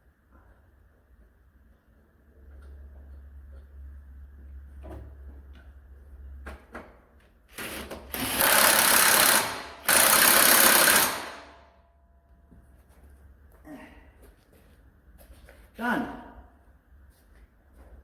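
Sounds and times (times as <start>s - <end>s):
low steady hum: 0.0s - 7.2s
rapid mechanical rattle: 7.6s - 11.5s.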